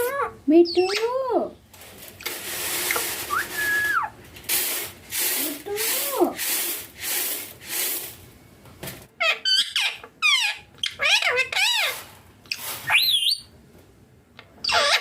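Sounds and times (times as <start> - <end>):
parakeet calling: 0.0 - 1.1, 9.2 - 13.5, 14.6 - 15.0.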